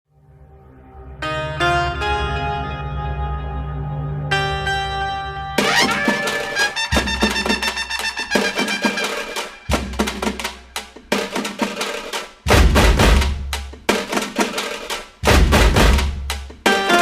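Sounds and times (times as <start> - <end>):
loud drum hit: 5.6 - 11.8, 12.5 - 14.6, 15.2 - 16.6
music with drums and beat: 5.6 - 17.0.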